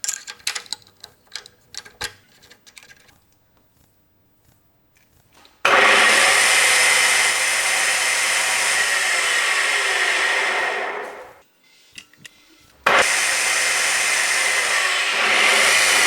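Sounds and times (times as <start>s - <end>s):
electric power tool running: 5.7s - 11.4s, 12.9s - 16.0s.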